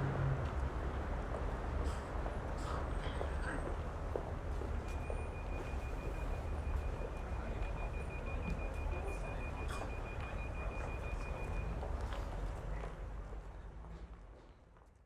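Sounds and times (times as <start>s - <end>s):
rumble of passing vehicles: 0.0s - 5.2s.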